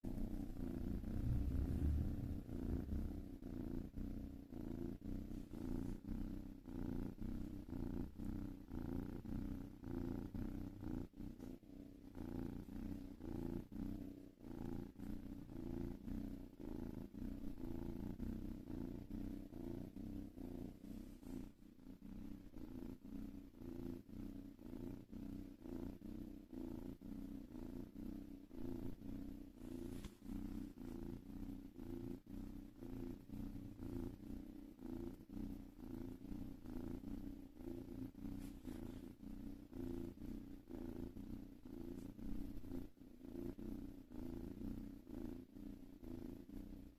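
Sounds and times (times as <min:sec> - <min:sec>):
cat purring: 0:00.0 - 0:46.9.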